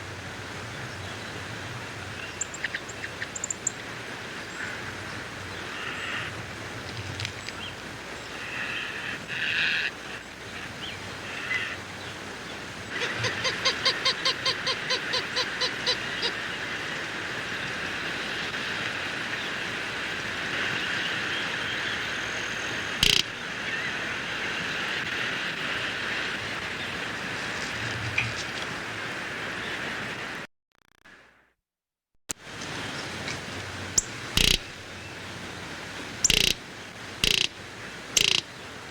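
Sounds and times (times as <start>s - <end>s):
outdoor background hiss: 0.0s - 30.5s, 32.4s - 38.9s
sharp click: 23.0s - 23.3s, 34.4s - 34.6s
animal call of short notes: 34.4s - 34.6s, 37.2s - 37.5s.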